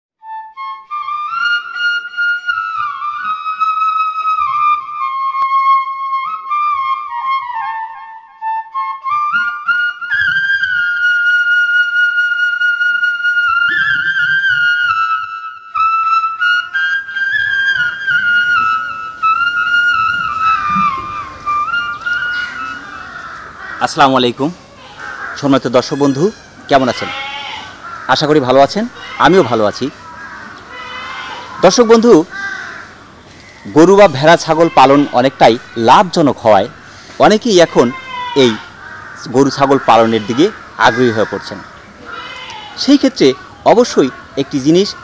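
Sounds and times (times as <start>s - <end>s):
solo flute melody: 0.2s - 23.1s.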